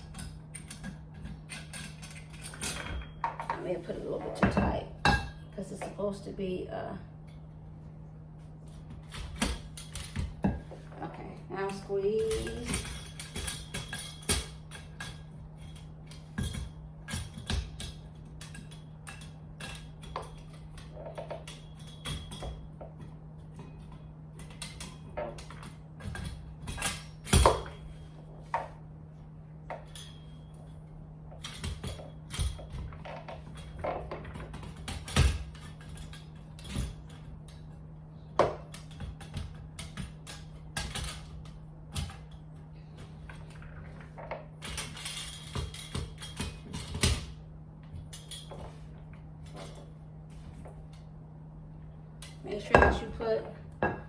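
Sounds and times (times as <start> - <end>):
metal parts clicking and clinking: 0.0 - 3.8, 9.0 - 23.1, 29.7 - 49.9
steady low hum: 0.0 - 54.0.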